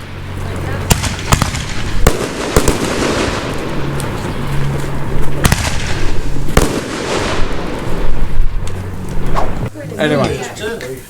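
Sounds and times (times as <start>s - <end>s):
fireworks bangs: 0.0s - 9.6s
continuous noise: 0.0s - 11.0s.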